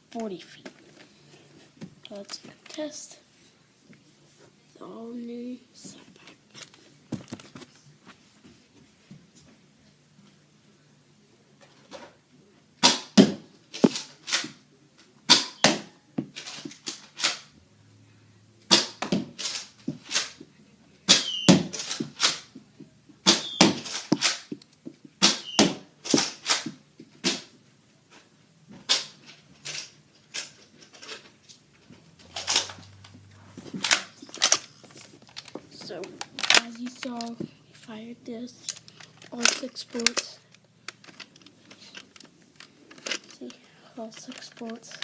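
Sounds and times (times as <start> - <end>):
toy blaster plastic clicks: 38.7 - 40.3.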